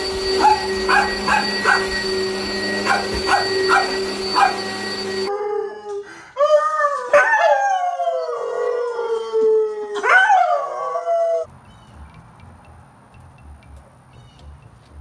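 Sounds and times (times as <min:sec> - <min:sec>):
dog howling: 0:00.0 - 0:11.5.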